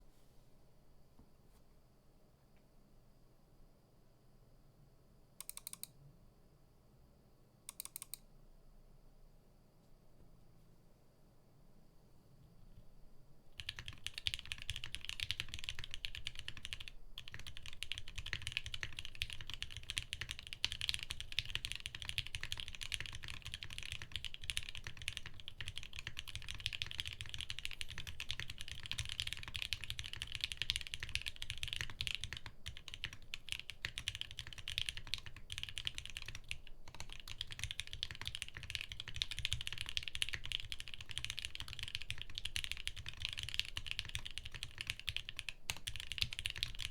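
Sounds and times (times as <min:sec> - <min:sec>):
fast mechanical keyboard typing: 0:13.6 - 0:46.9.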